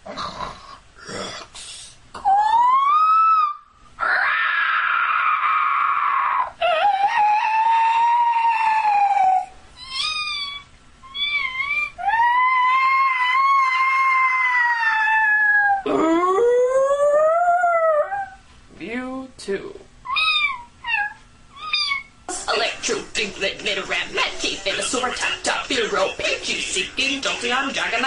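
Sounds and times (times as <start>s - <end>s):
woman imitating creature cries: 2.2s - 17.0s.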